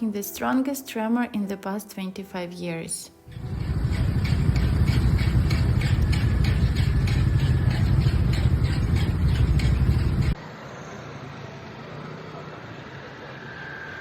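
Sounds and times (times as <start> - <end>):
loud low rumble with rattle: 3.3 - 10.4.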